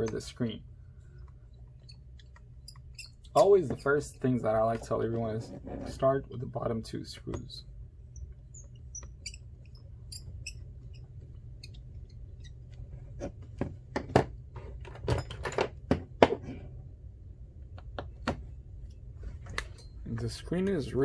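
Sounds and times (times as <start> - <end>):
steady low hum: 0.0 - 21.0
faint high squeaks: 2.6 - 4.1, 8.1 - 12.7.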